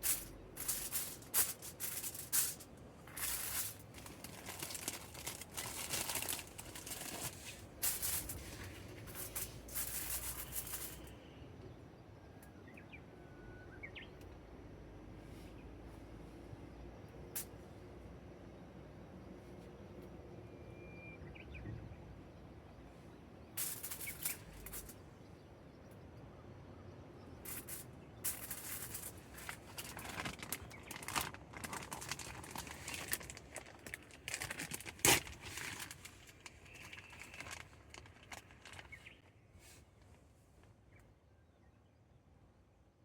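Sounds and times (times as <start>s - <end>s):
paper and kindling rustling: 0.0s - 11.0s, 27.5s - 39.2s.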